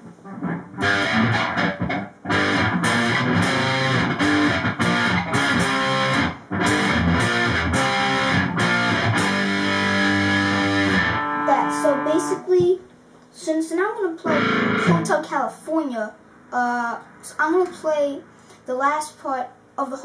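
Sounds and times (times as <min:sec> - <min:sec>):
electric guitar through amplifier: 0:00.0 - 0:12.7, 0:14.2 - 0:15.2.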